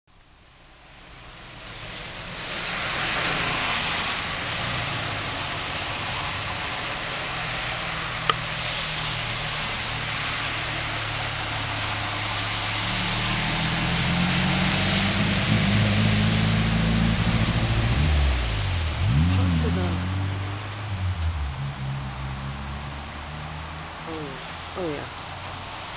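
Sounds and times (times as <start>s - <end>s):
vehicle engine: 0.2s - 25.9s
tyres spraying through floodwater: 0.6s - 25.9s.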